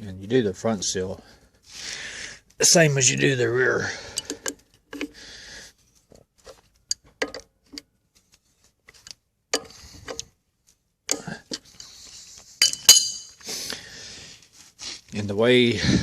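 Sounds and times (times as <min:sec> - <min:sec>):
metal tools clicking: 0:04.1 - 0:05.1, 0:12.6 - 0:13.4
metal clink: 0:12.6 - 0:13.4.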